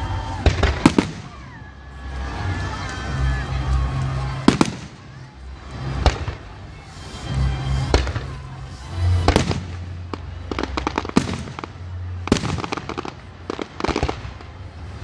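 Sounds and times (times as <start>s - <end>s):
rapid firework crackling: 0.0s - 15.0s.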